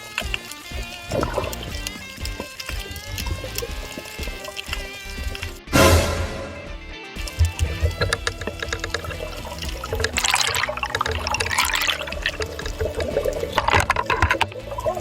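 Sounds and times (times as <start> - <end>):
small clicks: 0.0 - 5.6, 7.2 - 10.2
water sloshing and splashing: 0.0 - 6.0, 7.2 - 15.0
water gurgling: 0.0 - 6.4, 7.2 - 15.0.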